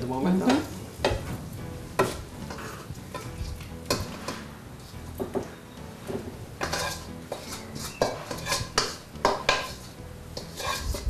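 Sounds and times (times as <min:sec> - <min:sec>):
metal spoon scraping a wok: 0:02.0 - 0:05.3, 0:06.1 - 0:11.0.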